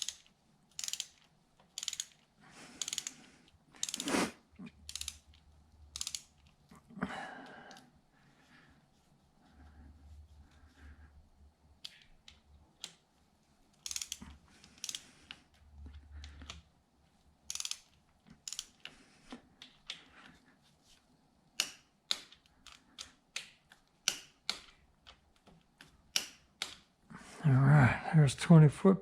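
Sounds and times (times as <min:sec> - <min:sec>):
torque wrench ratcheting: 0:00.8 - 0:01.2, 0:01.8 - 0:02.2, 0:02.8 - 0:03.2, 0:03.8 - 0:04.1, 0:04.9 - 0:05.2, 0:06.0 - 0:06.3, 0:13.8 - 0:14.2, 0:17.5 - 0:17.9.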